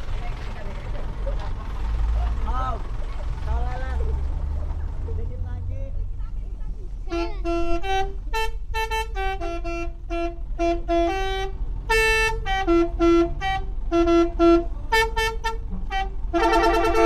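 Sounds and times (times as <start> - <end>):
bus multi-tone horn tune: 7.0 - 17.0.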